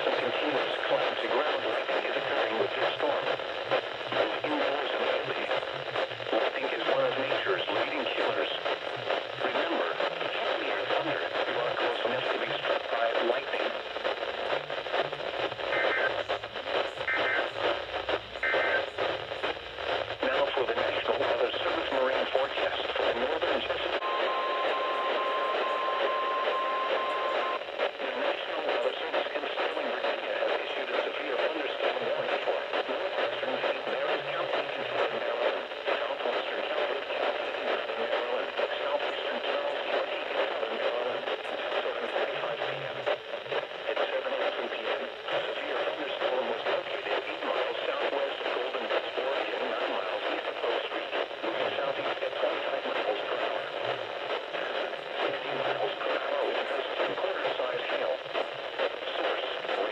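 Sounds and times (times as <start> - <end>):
radio hiss: 0.0 - 59.9
data tone bursts: 24.0 - 27.6.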